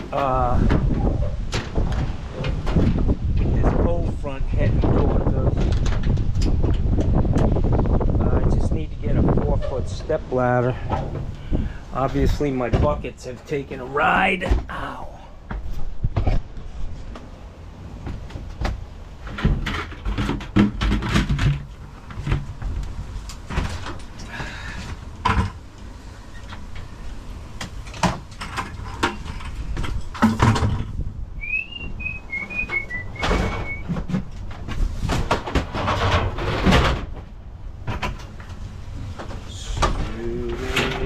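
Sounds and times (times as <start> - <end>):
wind buffeting microphone: 0.0 - 13.4, 15.1 - 41.0
high descending chirps: 31.4 - 33.8.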